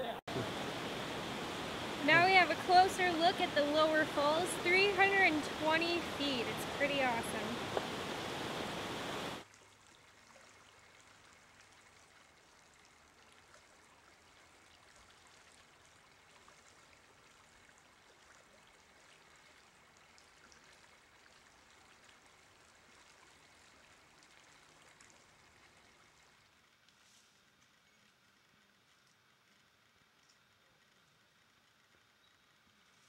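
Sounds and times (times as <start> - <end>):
distant running water: 0.0 - 26.9
small ticks and clicks: 26.8 - 33.0.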